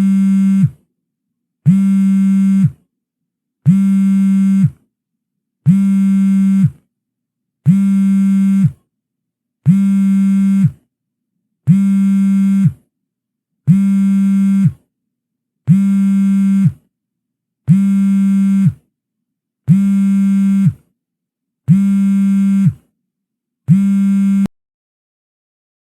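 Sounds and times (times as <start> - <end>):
phone vibration buzz: 0.0 - 0.8, 1.7 - 2.8, 3.7 - 4.8, 5.7 - 6.8, 7.7 - 8.8, 9.7 - 10.8, 11.7 - 12.8, 13.7 - 14.8, 15.7 - 16.8, 17.7 - 18.8, 19.7 - 20.8, 21.7 - 22.8, 23.7 - 24.5.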